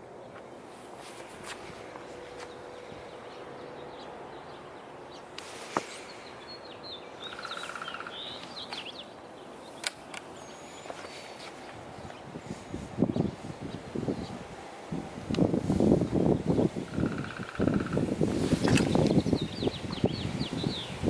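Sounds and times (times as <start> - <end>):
faint bird chirps: 5.9 - 11.3
sharp clicks: 9.8 - 10.3.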